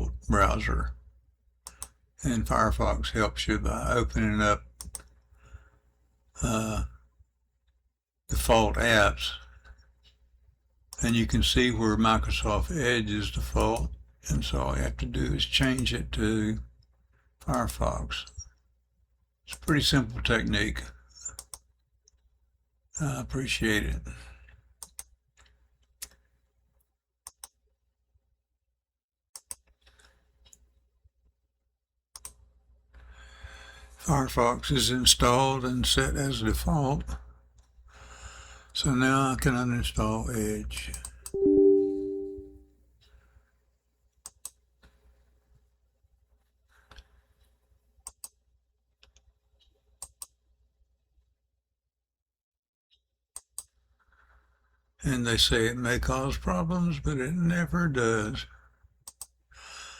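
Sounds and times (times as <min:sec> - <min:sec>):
computer mouse clicking: 0:01.6 - 0:01.9, 0:29.4 - 0:29.7, 0:32.2 - 0:32.4, 0:48.0 - 0:48.3
mouse button double-clicks: 0:41.4 - 0:42.6.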